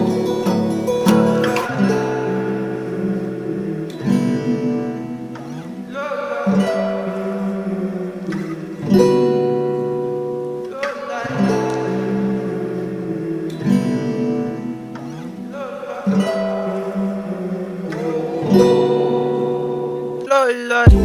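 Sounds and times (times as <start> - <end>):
acoustic guitar strumming chords: 0.0 - 21.0.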